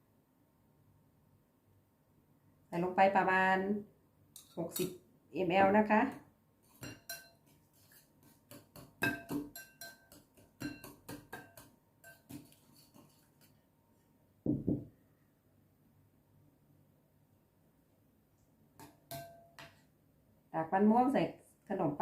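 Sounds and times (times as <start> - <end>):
spoon clinking against bowl: 4.4 - 5.0, 6.7 - 13.3, 18.8 - 19.8
dull low knocks: 14.5 - 14.9.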